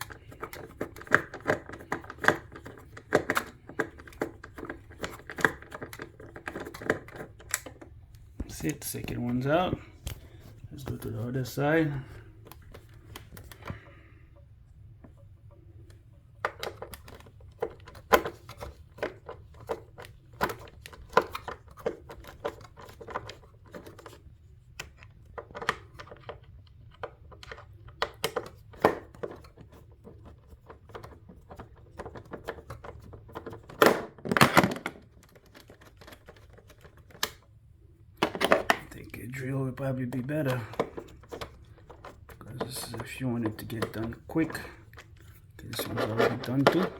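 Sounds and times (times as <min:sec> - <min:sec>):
handling knocks on metal and plastic: 0:30.9 - 0:37.4, 0:38.2 - 0:39.0.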